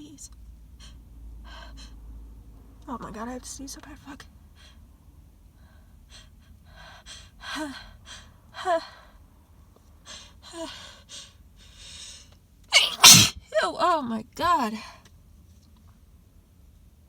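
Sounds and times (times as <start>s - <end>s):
woman gasping before a sneeze: 12.8s - 13.3s.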